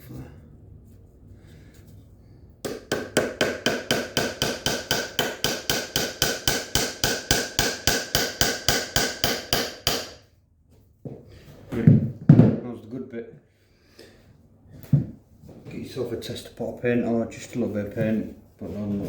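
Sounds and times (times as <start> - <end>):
hammer tapping wooden dowels: 2.6 - 10.2.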